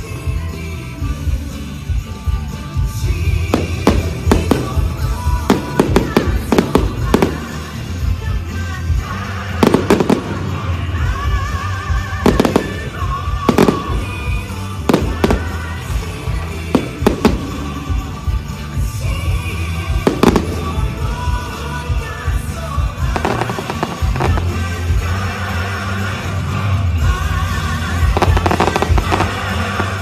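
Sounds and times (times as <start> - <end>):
loud music with bass: 0.0 - 30.0
fireworks bangs: 3.4 - 8.2, 8.9 - 22.4, 23.0 - 25.2, 28.0 - 30.0.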